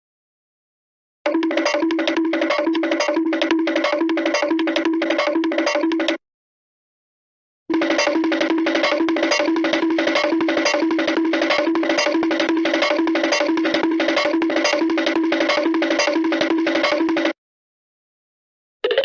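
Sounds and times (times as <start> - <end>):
looped cartoon musical figure: 7.7 - 17.4.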